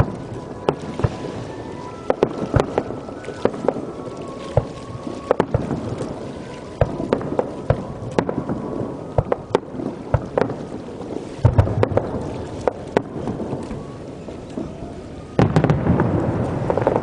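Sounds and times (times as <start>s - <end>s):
deep fireworks booms: 0.0s - 17.0s
fireworks bursting: 0.0s - 17.0s.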